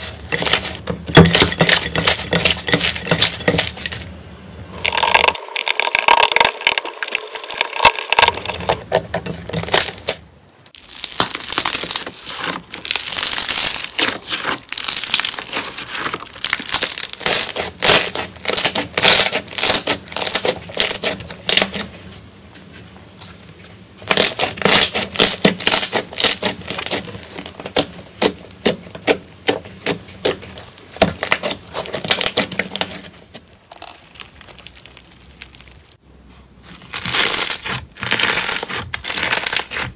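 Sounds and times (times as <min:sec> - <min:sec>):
slime crackling and popping: 0:04.8 - 0:21.9, 0:24.0 - 0:36.0, 0:36.9 - 0:39.9.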